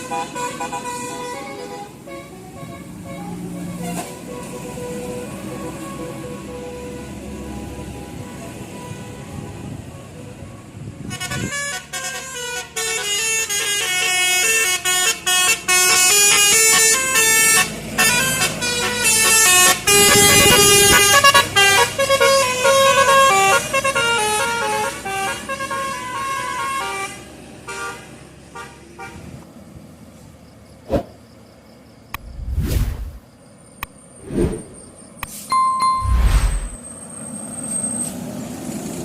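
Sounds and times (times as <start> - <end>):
bus musical horns playing tunes: 0.0 - 29.4.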